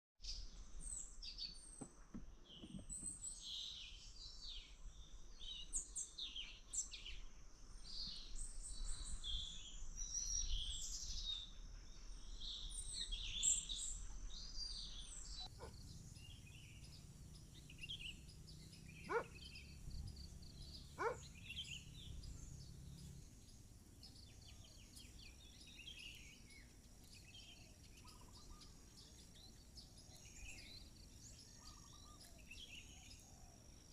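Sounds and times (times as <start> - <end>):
birds chirping and calling: 12.4 - 33.9.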